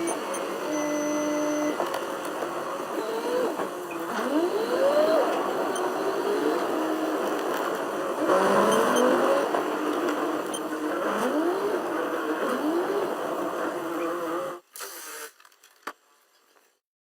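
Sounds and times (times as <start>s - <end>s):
car engine revving: 4.1s - 13.5s.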